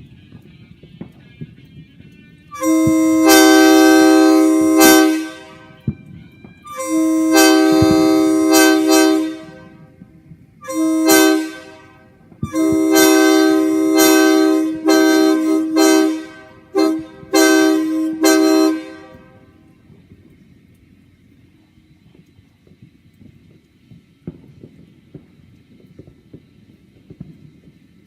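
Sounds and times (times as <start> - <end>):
locomotive air horn blasts: 2.5 - 19.9.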